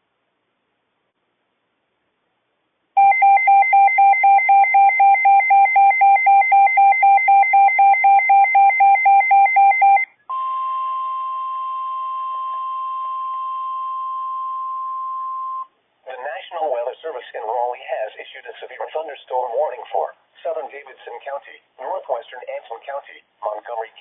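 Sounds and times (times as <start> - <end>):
steady warning alarm tone: 3.0 - 15.7.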